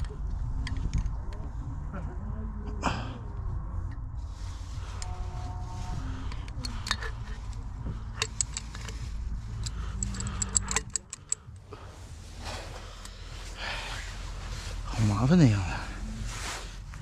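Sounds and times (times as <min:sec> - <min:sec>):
low hum: 0:00.0 - 0:17.0
metal tools clinking: 0:06.3 - 0:11.6.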